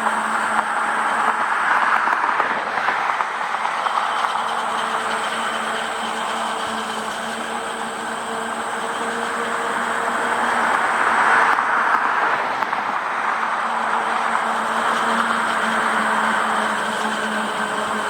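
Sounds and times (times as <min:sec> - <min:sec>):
vehicle running rush: 0:00.0 - 0:18.0.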